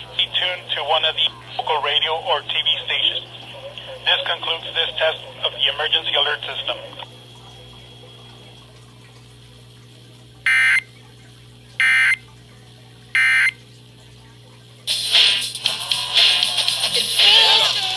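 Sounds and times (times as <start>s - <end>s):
digital data tone bursts: 10.5s - 10.9s
loud music: 14.9s - 17.9s.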